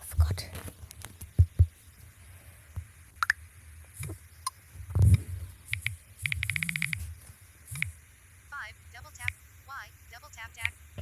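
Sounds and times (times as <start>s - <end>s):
phone interface clicks: 4.0s - 7.1s, 7.7s - 8.0s
rapid buzzing pulse: 4.0s - 8.2s
short electronic beeps: 5.7s - 7.1s.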